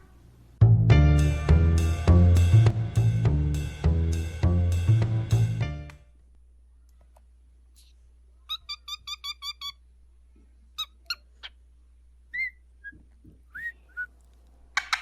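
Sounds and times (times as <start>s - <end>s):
parrot chirping: 8.4s - 9.9s, 10.7s - 11.6s, 12.3s - 14.1s.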